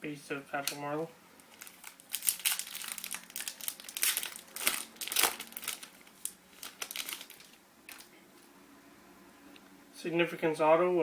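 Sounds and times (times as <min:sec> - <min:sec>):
plastic wrapper crinkling: 0:00.5 - 0:00.8, 0:01.4 - 0:08.2.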